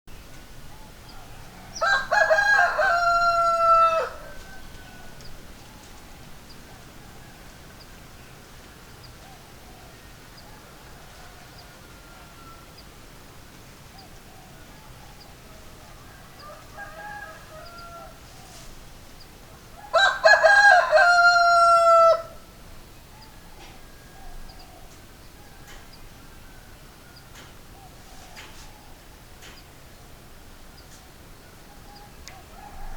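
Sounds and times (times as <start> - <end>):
distant bird calls: 0.1 - 20.8, 21.8 - 32.9
rooster crowing: 1.2 - 5.9, 9.8 - 12.9, 14.5 - 18.3, 19.7 - 22.5, 31.5 - 32.9.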